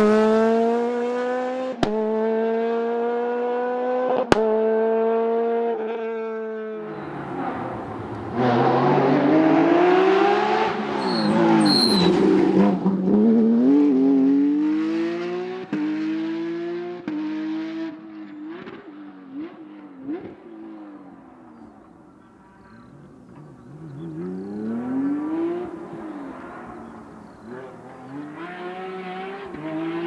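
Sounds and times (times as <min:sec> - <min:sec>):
rally car engine revving: 0:00.0 - 0:05.6, 0:06.8 - 0:30.0
short high squeal: 0:10.9 - 0:12.6.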